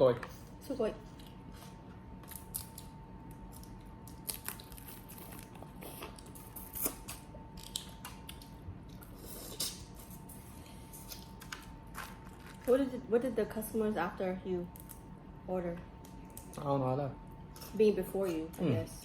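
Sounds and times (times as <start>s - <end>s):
faint steady hum: 0.0s - 19.0s
chewing and wet squishing: 1.1s - 12.7s, 16.0s - 16.7s.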